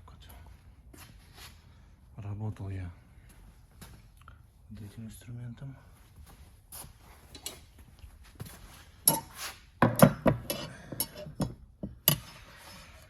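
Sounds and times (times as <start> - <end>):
metal tools clinking: 7.3 - 7.7, 9.0 - 9.3, 10.0 - 12.3.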